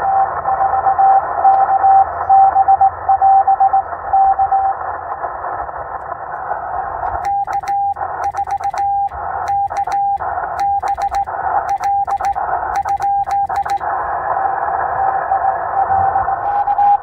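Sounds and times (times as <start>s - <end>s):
faint morse signal: 0.0s - 4.9s, 7.1s - 14.1s, 14.7s - 17.0s
receiver hiss: 2.5s - 17.0s
morse code sidetone beeps: 7.2s - 13.8s
morse key clicks: 9.5s - 13.8s.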